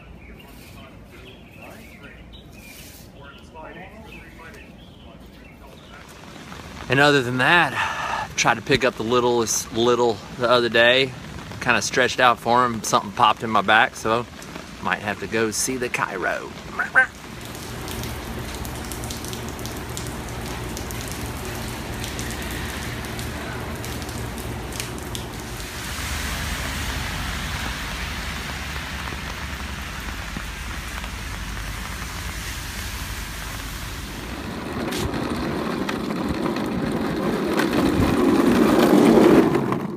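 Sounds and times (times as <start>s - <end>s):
steady rain falling: 5.4s - 39.9s
low rushing sound: 20.4s - 36.4s.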